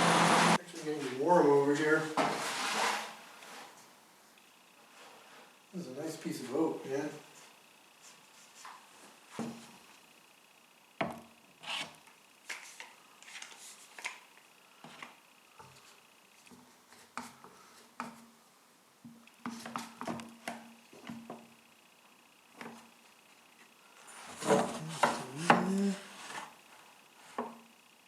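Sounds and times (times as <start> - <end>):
faint steady hum: 0.0 - 28.0
wooden board and tools handled: 24.2 - 26.5.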